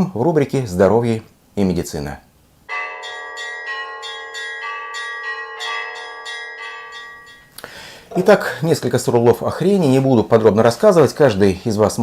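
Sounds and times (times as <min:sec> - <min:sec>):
church bells ringing: 0:02.7 - 0:07.5.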